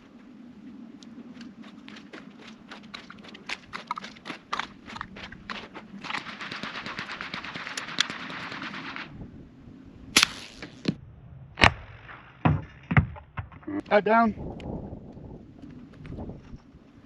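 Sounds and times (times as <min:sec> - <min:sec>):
suppressed gunshots: 0:06.0 - 0:09.1, 0:10.2 - 0:11.0.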